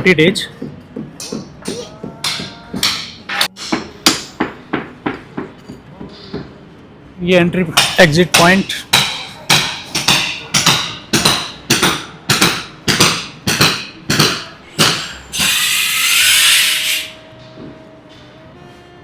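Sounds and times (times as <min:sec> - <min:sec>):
hammer blows ringing: 0:07.8 - 0:15.6.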